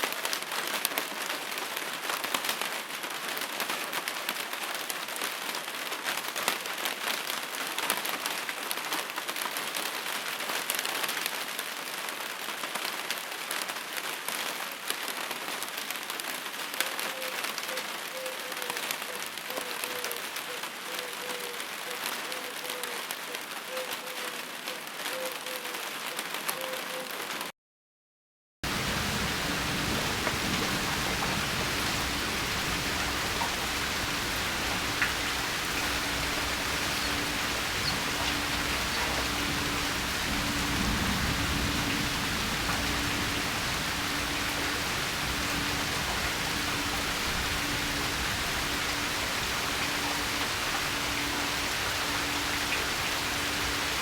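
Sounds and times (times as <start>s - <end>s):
steady rain hiss: 28.6s - 54.0s.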